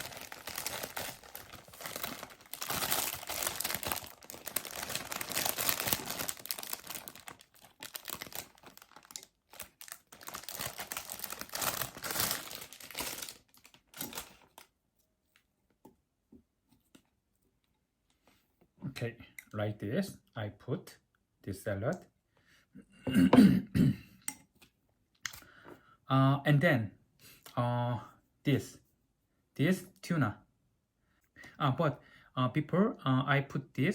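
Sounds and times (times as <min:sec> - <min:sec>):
salad leaves crinkling and rustling: 0:00.0 - 0:14.7.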